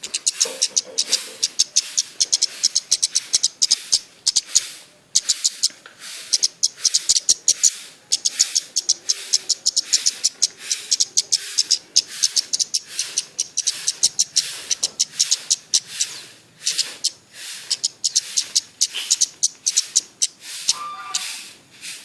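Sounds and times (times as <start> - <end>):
songbird chirping: 0.0 - 21.5.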